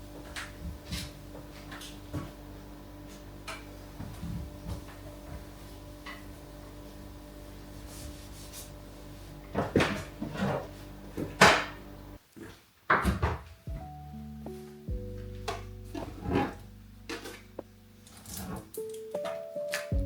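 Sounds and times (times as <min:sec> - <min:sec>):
kitchen items knocking and clattering: 0:09.5 - 0:11.8, 0:12.9 - 0:13.8
low steady hum: 0:13.7 - 0:18.7.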